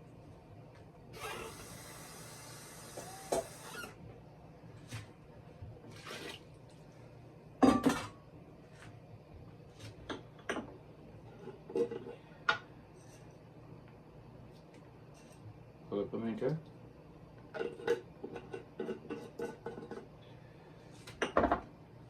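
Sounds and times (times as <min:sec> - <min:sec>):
pots and utensils clattering: 0:07.7 - 0:08.2, 0:17.6 - 0:20.1.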